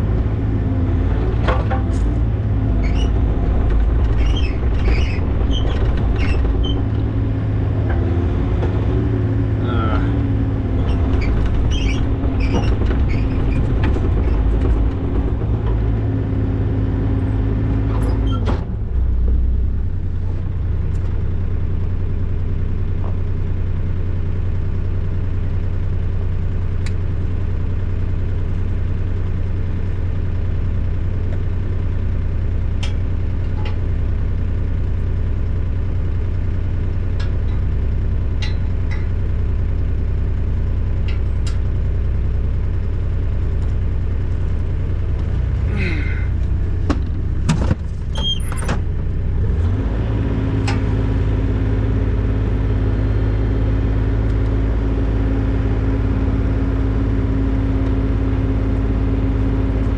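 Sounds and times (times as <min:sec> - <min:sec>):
construction machine engine running: 0:00.0 - 0:59.9.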